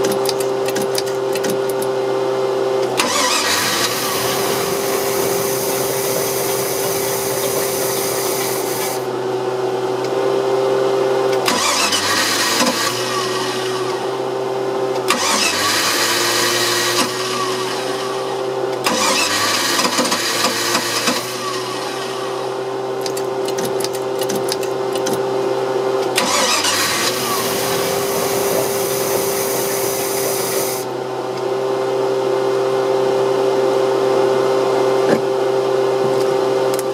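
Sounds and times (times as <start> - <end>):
hiss: 5.0 - 9.1, 27.4 - 30.9.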